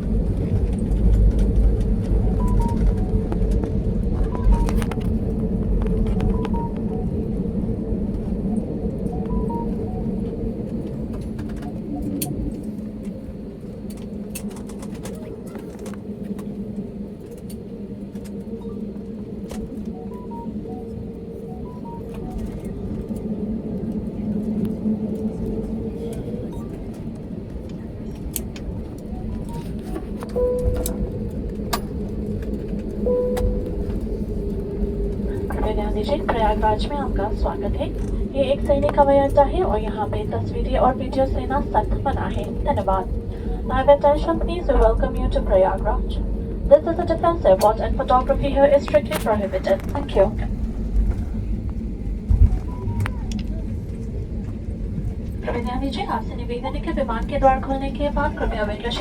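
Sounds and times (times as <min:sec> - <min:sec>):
airliner cabin engine hum: 0:00.0 - 0:59.0
short tone: 0:30.4 - 0:31.2, 0:33.1 - 0:33.9.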